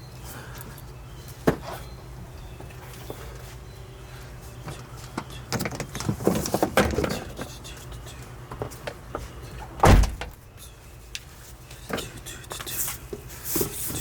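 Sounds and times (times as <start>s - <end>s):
rustling and clattering of parts: 5.1s - 7.5s
heavy thump: 9.8s - 10.4s.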